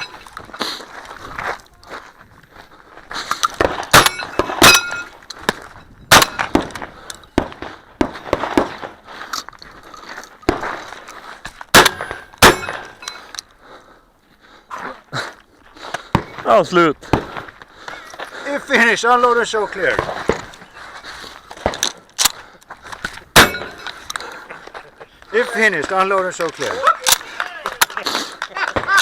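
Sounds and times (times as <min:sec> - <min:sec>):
shotgun shots: 0:03.6 - 0:04.9, 0:06.1 - 0:06.8, 0:11.7 - 0:12.9, 0:23.4 - 0:24.0
metallic ring of steel targets: 0:03.9 - 0:05.2, 0:06.1 - 0:06.5, 0:11.8 - 0:13.2, 0:23.4 - 0:24.0.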